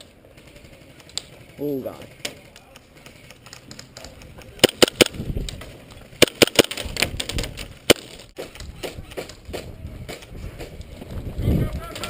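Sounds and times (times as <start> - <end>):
airsoft guns firing: 4.5 - 5.2, 6.2 - 7.2.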